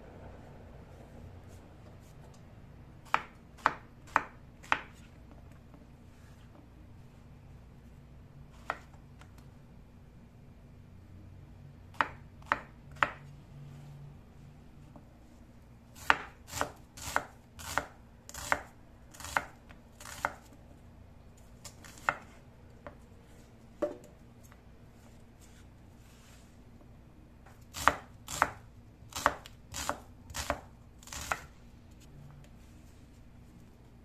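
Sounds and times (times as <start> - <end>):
knife chopping on cutting board: 12.0 - 13.2, 16.0 - 20.4, 27.7 - 31.5.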